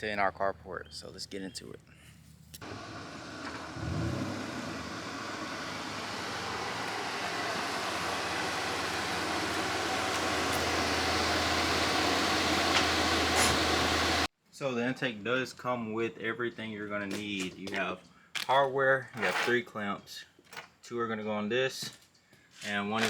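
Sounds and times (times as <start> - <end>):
car engine and road noise: 2.6 - 14.3
car engine starting: 2.6 - 14.3.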